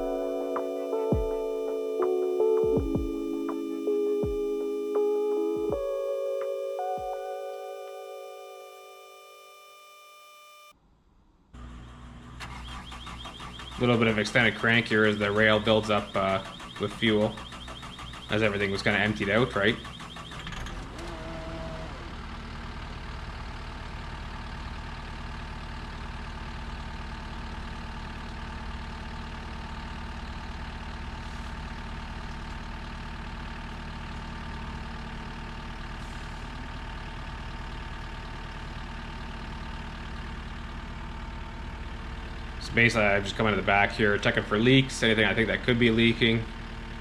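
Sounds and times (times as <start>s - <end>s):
diesel engine idling: 0.0s - 8.7s, 11.6s - 47.0s
brief tone: 0.0s - 10.8s.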